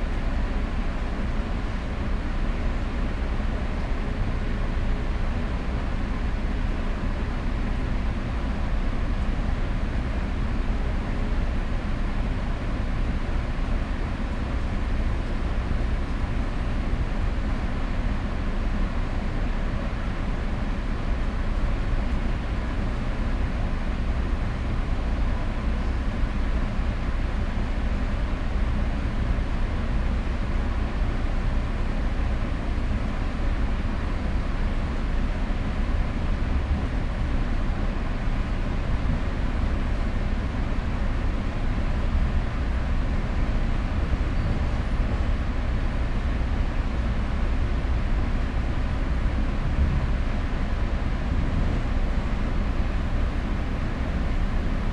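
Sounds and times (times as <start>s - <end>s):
train carriage rumble: 34.8s - 54.9s.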